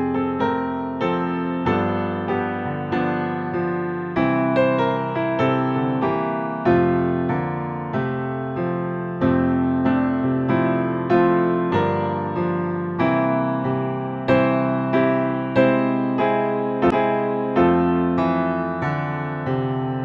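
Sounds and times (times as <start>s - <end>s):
electric piano chords: 0.0s - 20.0s.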